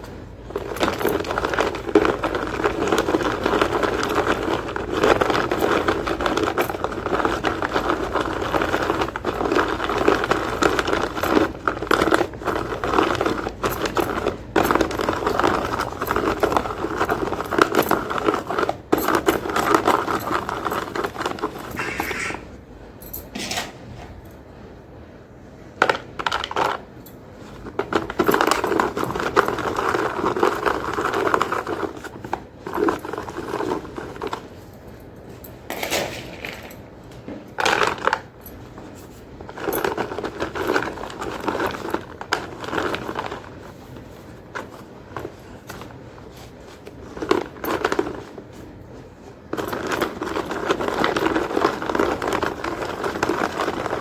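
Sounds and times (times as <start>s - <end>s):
chalk pieces cracking: 0.6s - 22.5s
chalk crunching: 19.8s - 22.5s.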